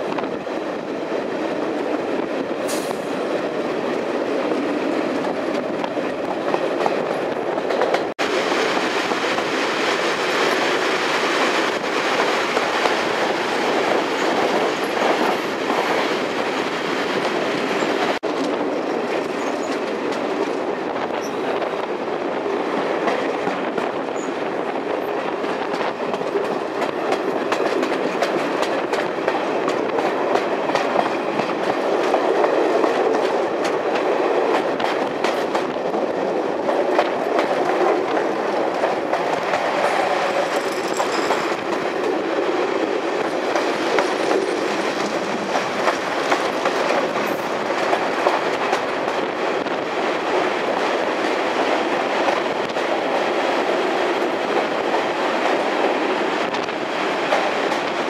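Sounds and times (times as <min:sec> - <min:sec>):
train rumbling on track: 0:00.0 - 0:58.0.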